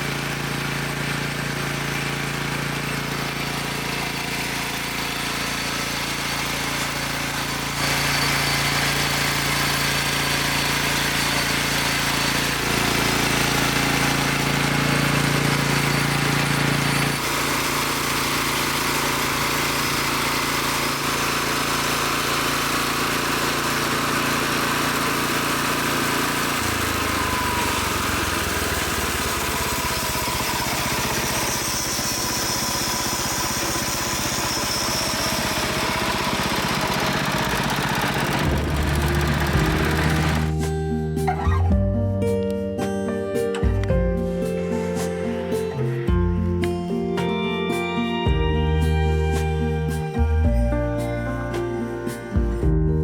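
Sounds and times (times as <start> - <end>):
sawmill engine running: 0.0 - 41.7.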